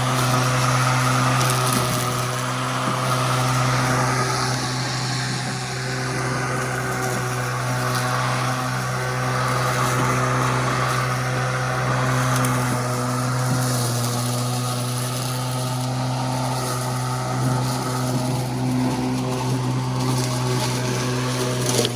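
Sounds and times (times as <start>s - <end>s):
electric lawn mower running: 0.0s - 21.9s.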